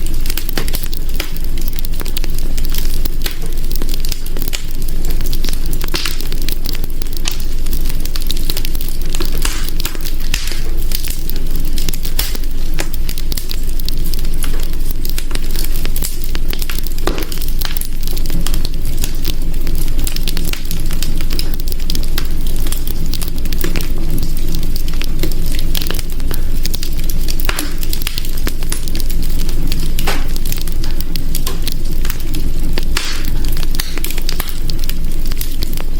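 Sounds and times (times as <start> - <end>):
wood fire crackling and popping: 0.0 - 35.9.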